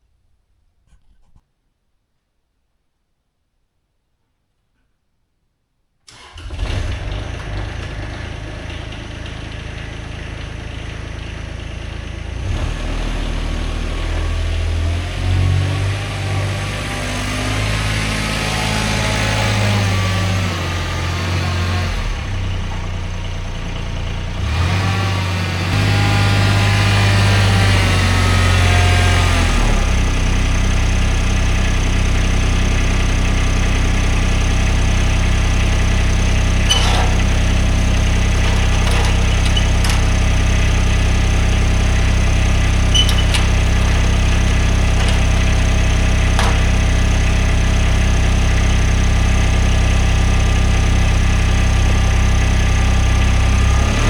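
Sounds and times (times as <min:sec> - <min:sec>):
engine running: 0:17.7 - 0:54.0.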